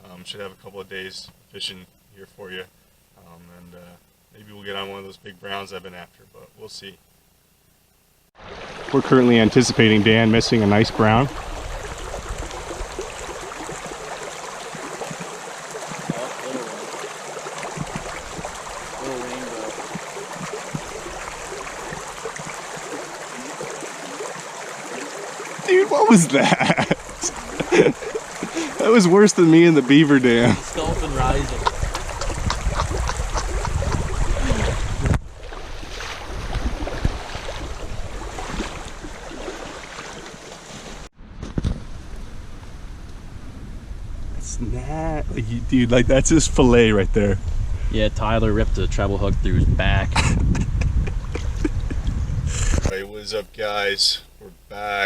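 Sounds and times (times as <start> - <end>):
stream babbling: 8.4 - 41.1, 52.9 - 55.0
wind buffeting microphone: 10.0 - 15.2, 17.6 - 23.5, 30.3 - 39.4, 41.2 - 52.9
small water plinks: 10.8 - 40.8.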